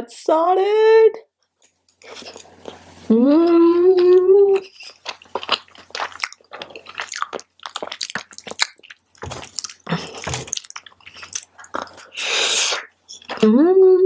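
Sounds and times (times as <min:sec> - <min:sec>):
close chewing with wet mouth clicks: 0:04.0 - 0:13.4.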